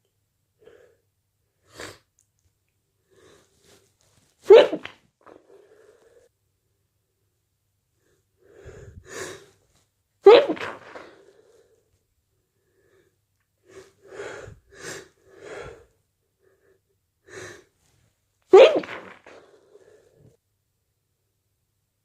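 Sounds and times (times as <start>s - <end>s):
person sneezing: 4.4s - 5.4s, 10.2s - 11.3s, 18.5s - 19.8s
breathy in-breaths: 5.3s - 6.3s, 8.1s - 9.6s, 12.6s - 17.8s.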